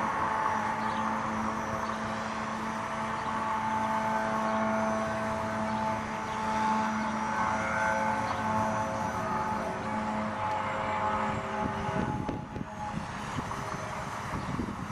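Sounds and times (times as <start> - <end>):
rc helicopter motor whine: 0.0 - 14.9
wind noise on microphone: 9.6 - 14.9.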